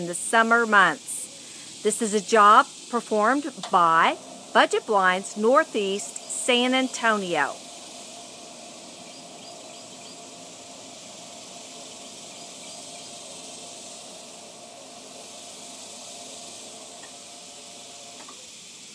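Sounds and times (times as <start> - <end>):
faint hum: 0.0 - 18.5
outdoor background hiss: 0.0 - 18.9.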